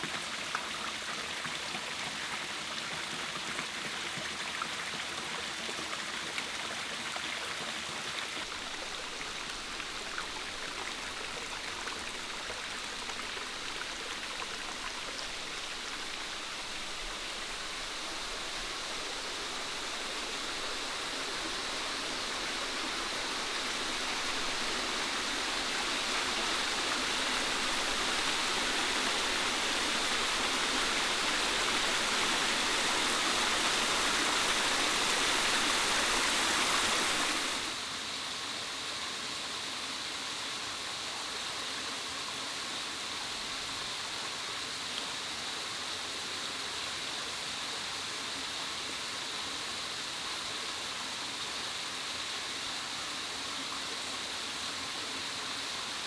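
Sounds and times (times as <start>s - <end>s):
water rushing: 8.1s - 37.8s.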